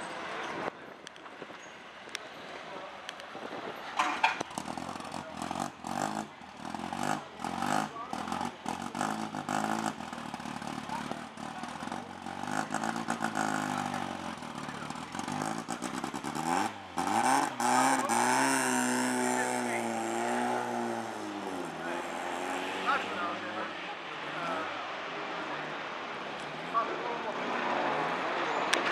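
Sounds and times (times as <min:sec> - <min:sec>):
racing car engine revving: 0:04.4 - 0:25.6.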